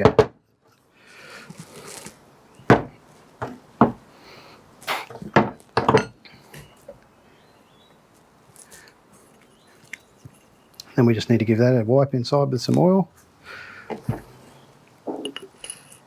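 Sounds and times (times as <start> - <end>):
metal parts knocking and clinking: 5.8 - 6.7, 15.2 - 16.0
metal parts rubbing: 15.2 - 16.0.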